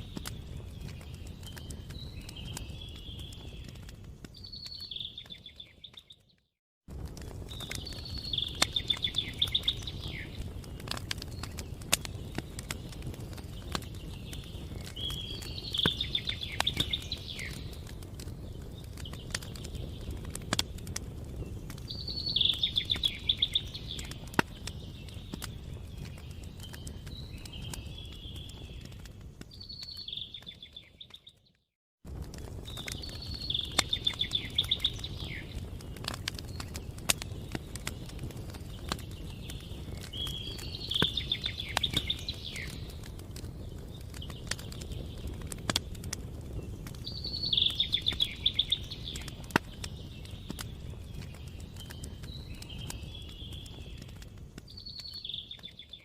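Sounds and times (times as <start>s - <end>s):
campfire crackling and popping: 0.0s - 56.0s
songbird singing trilled phrases: 4.3s - 6.4s, 7.5s - 17.8s, 21.4s - 28.9s, 29.5s - 31.4s, 32.7s - 38.0s, 38.6s - 43.0s, 46.6s - 56.0s.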